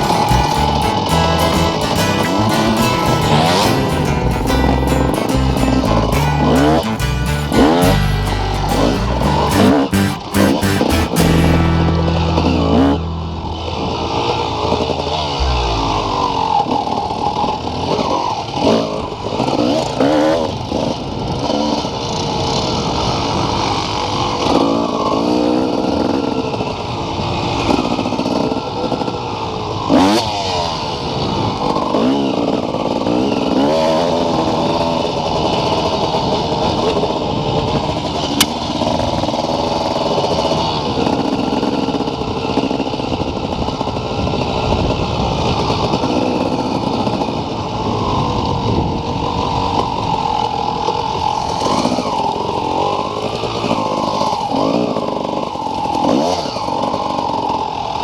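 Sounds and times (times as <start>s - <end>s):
music with bass line: 0.0s - 16.5s.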